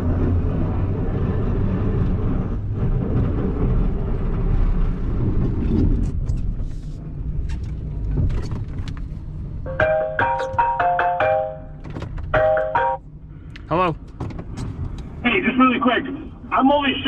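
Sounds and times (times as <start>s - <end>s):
truck engine rumbling: 0.0s - 17.0s
phone ringtone melody: 9.7s - 11.7s, 12.4s - 13.0s.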